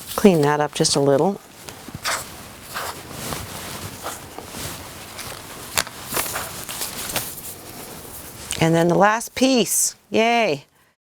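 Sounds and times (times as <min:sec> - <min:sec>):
paper and fabric rustling: 0:00.0 - 0:09.2.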